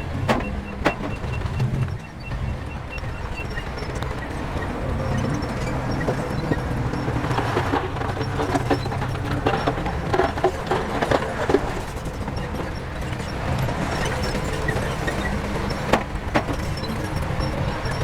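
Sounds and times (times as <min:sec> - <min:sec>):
metal clanks and knocks: 0:00.0 - 0:02.1
diesel construction machinery running: 0:00.0 - 0:18.0.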